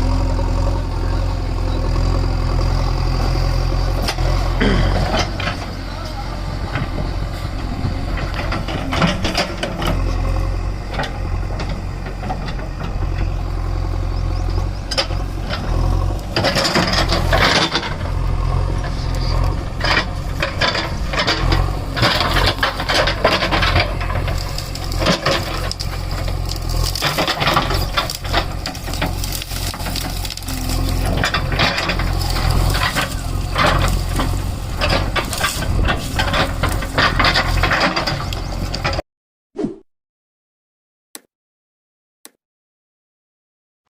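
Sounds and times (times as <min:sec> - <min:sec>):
diesel engine running: 0:00.0 - 0:39.0
bucket and arm clanking: 0:04.0 - 0:13.3, 0:14.9 - 0:39.0.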